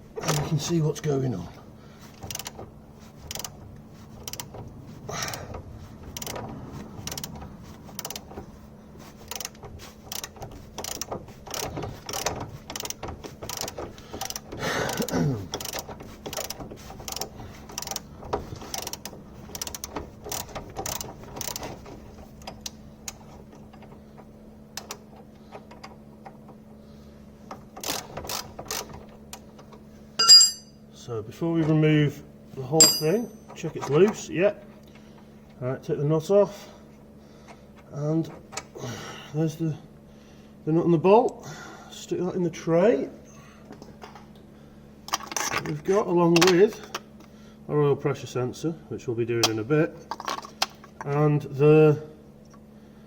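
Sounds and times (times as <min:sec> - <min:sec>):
socket ratchet clicking: 0:03.3 - 0:03.5.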